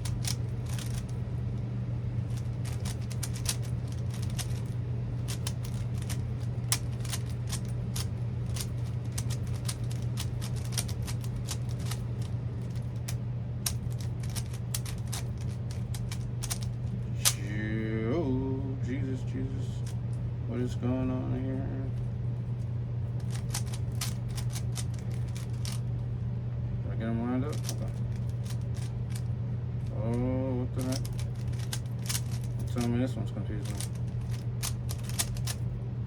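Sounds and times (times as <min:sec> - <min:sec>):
puzzle cube plastic clicks: 0:00.0 - 0:01.2, 0:02.3 - 0:17.4, 0:23.2 - 0:25.9, 0:27.5 - 0:30.2, 0:30.8 - 0:32.9, 0:33.6 - 0:35.6
steady low hum: 0:00.0 - 0:36.0.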